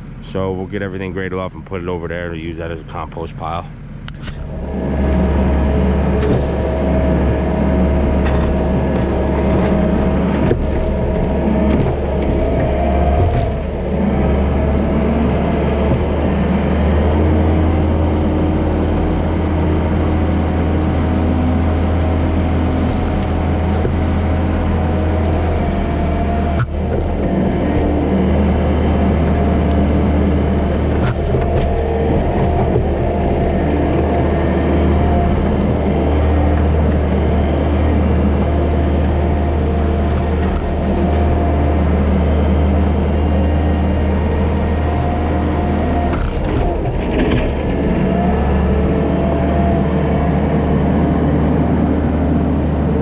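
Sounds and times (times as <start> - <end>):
diesel engine running under load: 0.0 - 53.0.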